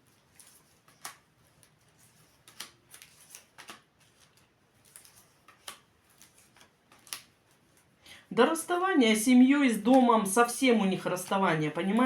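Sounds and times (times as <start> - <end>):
cards clicking and rustling: 0.0 - 7.9.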